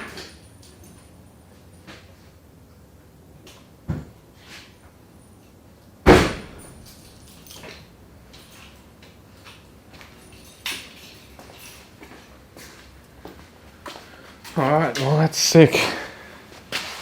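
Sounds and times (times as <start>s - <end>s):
door slamming shut: 6.0s - 7.0s.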